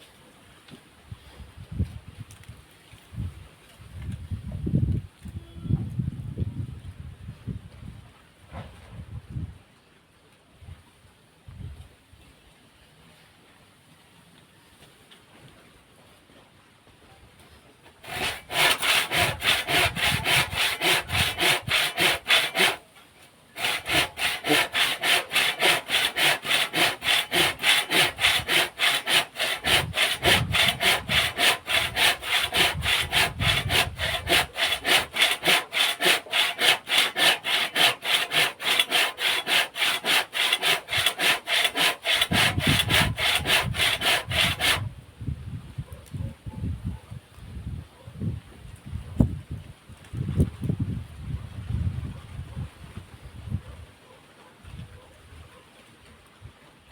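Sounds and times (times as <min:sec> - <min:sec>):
hand saw cutting wood: 0:18.0 - 0:22.9, 0:23.5 - 0:44.9.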